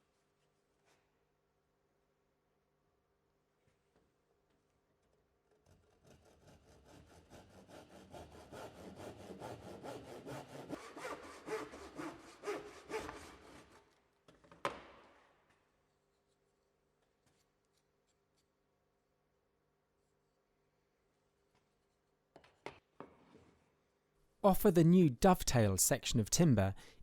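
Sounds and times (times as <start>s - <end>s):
hand saw cutting timber: 5.6s - 13.9s.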